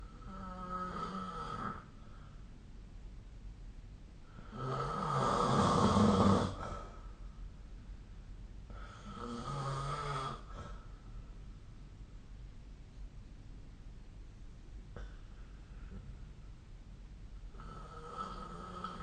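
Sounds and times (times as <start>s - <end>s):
person snoring: 0.0s - 1.9s, 4.3s - 7.0s, 8.7s - 10.8s, 17.5s - 19.0s.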